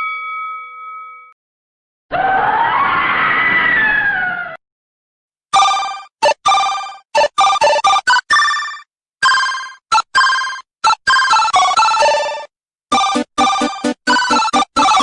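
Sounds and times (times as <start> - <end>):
electronic chiming jingle: 5.6 - 15.0.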